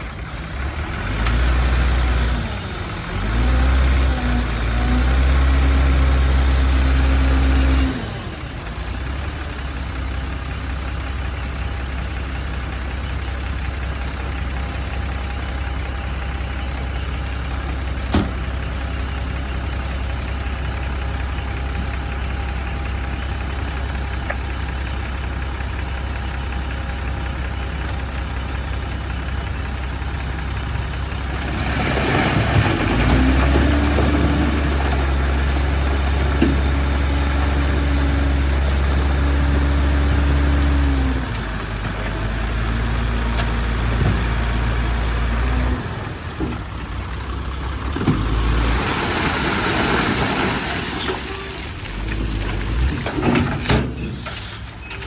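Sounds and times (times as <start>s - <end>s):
diesel engine revving and idling: 0.0s - 55.0s.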